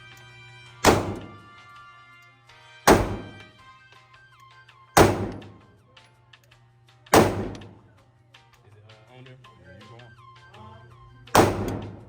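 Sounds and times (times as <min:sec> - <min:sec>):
background music: 0:00.0 - 0:12.0
pistol shots: 0:00.8 - 0:01.5, 0:02.9 - 0:03.6, 0:05.0 - 0:05.7, 0:07.1 - 0:07.8, 0:11.3 - 0:12.0.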